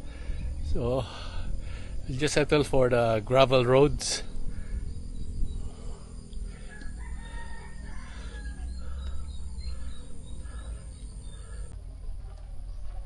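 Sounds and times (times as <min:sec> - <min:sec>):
wind rumble on microphone: 0:00.0 - 0:11.7
chirping bird calls: 0:03.7 - 0:11.8.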